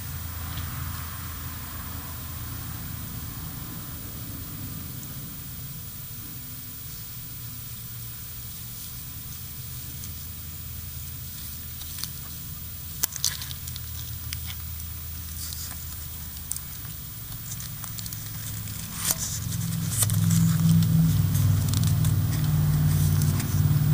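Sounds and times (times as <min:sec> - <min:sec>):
puppy rustling in dry grass: 0:08.5 - 0:23.7
low rumble: 0:13.8 - 0:23.9.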